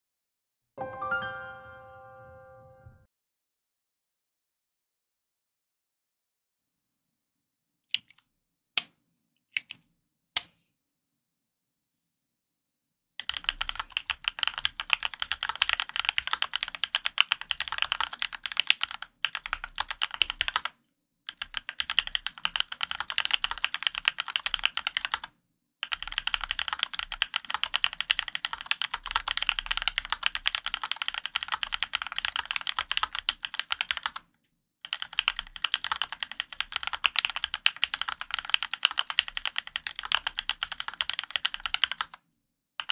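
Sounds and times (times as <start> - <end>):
typing on mechanical keyboard: 13.2 - 20.7, 21.3 - 42.2.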